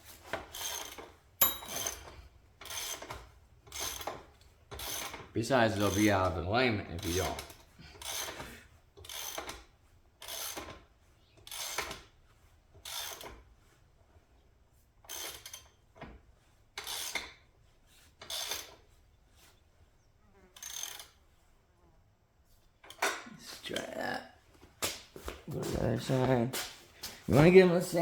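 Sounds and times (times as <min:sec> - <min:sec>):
wrench rasping on bolt: 0:00.5 - 0:06.4, 0:07.0 - 0:10.8, 0:11.4 - 0:12.1, 0:12.8 - 0:13.4, 0:15.1 - 0:15.7, 0:16.8 - 0:17.4, 0:18.2 - 0:18.8.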